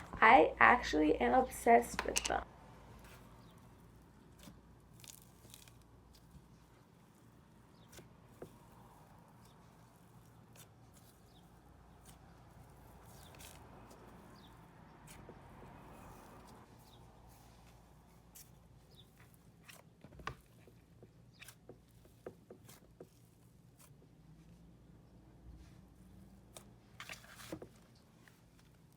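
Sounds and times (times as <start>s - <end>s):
slime crackling and tearing: 3.0s - 17.4s.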